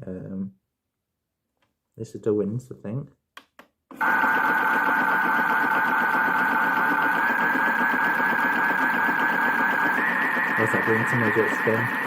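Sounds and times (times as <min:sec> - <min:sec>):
small electric motor whining: 0:04.0 - 0:12.0.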